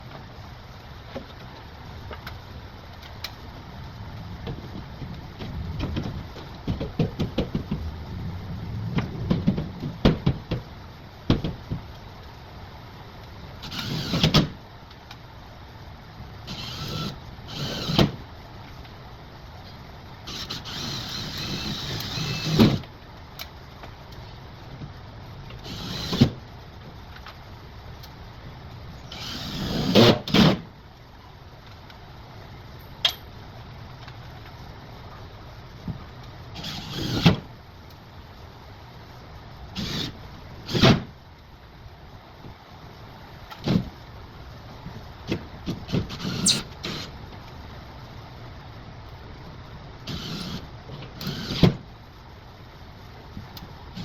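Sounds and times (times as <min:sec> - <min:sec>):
short whirring bursts: 0:46.1 - 0:47.2.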